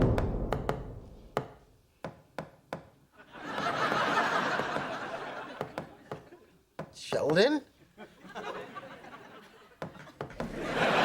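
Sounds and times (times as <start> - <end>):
knocking on a wall: 0.0 - 1.6
audience laughter: 3.2 - 6.5, 8.0 - 11.0.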